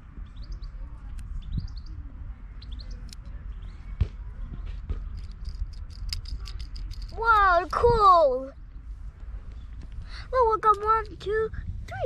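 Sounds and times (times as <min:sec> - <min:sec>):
steady low rumble: 0:00.0 - 0:12.0
small birds chirping: 0:00.1 - 0:05.6, 0:09.4 - 0:10.3.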